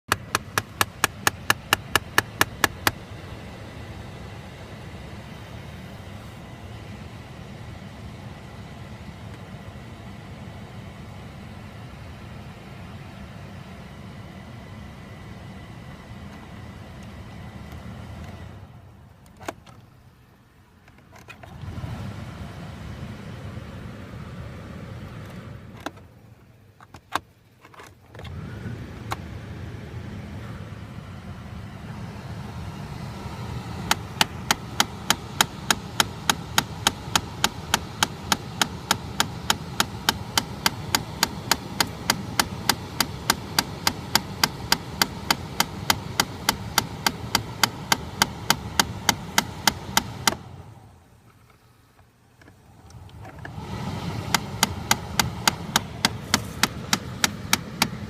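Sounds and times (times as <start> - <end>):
rapid clicking behind glovebox: 0.0 - 3.0, 25.3 - 28.4, 33.3 - 58.0
low steady hum: 0.0 - 58.0.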